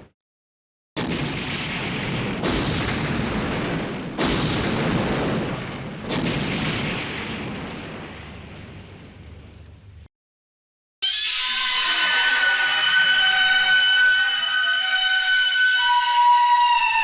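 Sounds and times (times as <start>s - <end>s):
rumbling explosions: 1.0s - 9.7s.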